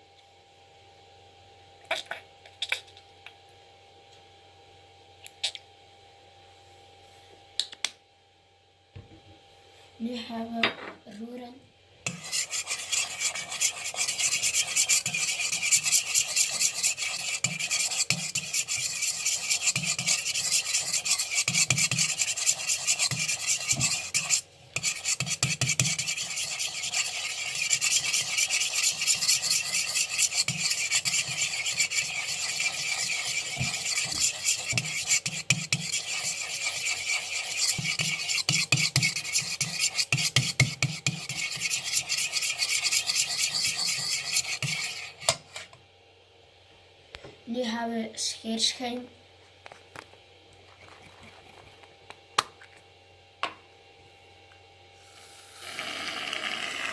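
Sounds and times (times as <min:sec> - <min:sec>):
utensil scraping in bowl: 0:12.1 - 0:45.8.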